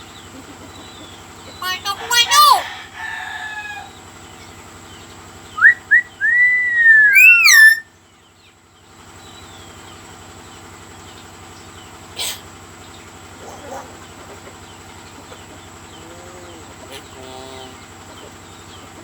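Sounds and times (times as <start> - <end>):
bird whistling: 5.5 - 7.9.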